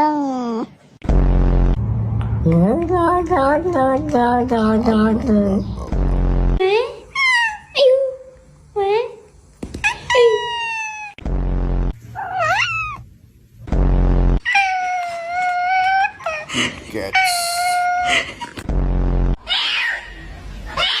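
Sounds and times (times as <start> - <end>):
short low buzzing: 1.0 - 6.6, 11.2 - 12.1, 13.6 - 14.4
cat meowing: 12.2 - 13.0.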